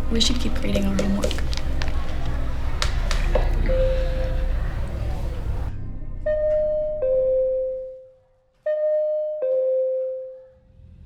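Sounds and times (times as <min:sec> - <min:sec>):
two-note ding-dong chime: 0:08.7 - 0:10.5.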